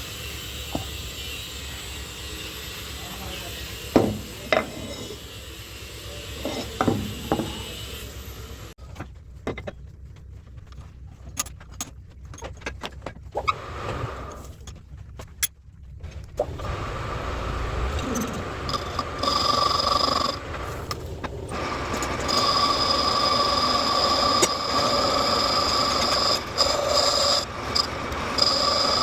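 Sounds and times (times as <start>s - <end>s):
sharp metal knocks: 4.0s - 4.9s
machine noise with faint whine: 11.4s - 29.0s.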